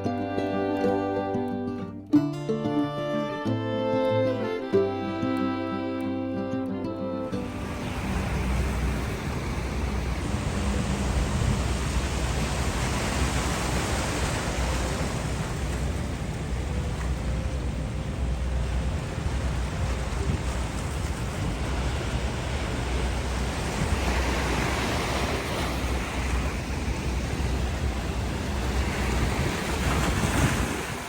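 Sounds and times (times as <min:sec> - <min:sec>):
river water rushing: 0:07.1 - 0:31.0
wind buffeting microphone: 0:07.4 - 0:31.0.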